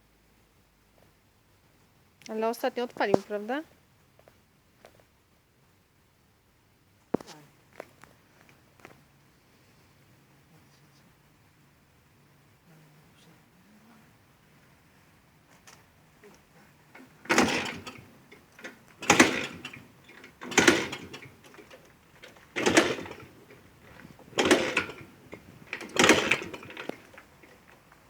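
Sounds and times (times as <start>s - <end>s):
engine kick-started not catching: 16.3s - 28.0s.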